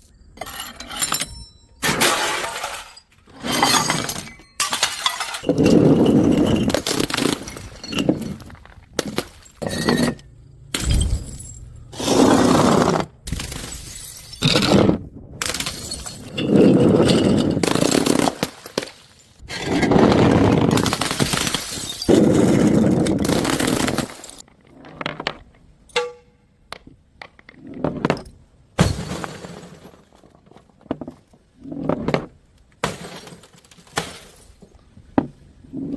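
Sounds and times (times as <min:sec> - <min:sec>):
tinkle of scattering glass shards: 0:00.3 - 0:08.5, 0:10.8 - 0:11.9, 0:13.4 - 0:14.6, 0:15.5 - 0:19.4, 0:20.9 - 0:22.2
glass bottles shattering on stairs: 0:00.4 - 0:11.8, 0:13.4 - 0:14.7, 0:15.4 - 0:19.4, 0:20.7 - 0:24.4, 0:28.1 - 0:30.2, 0:32.8 - 0:34.8.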